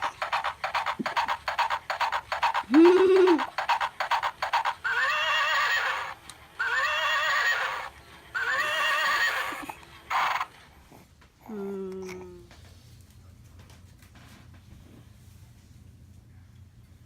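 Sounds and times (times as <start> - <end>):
recorded horse whinny: 2.6 - 3.6, 4.6 - 10.5.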